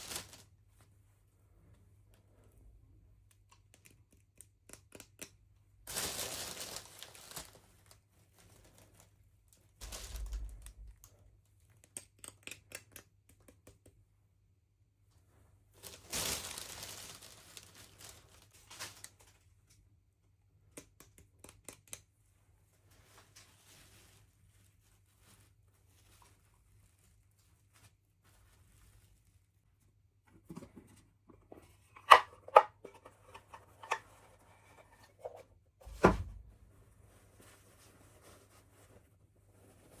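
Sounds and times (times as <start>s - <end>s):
packaging crinkling and tearing: 0.0s - 0.5s, 5.9s - 9.1s, 9.8s - 11.1s, 15.8s - 19.4s
small clicks and taps: 3.2s - 5.5s, 10.6s - 14.2s, 20.6s - 22.1s
low thump: 35.9s - 36.5s.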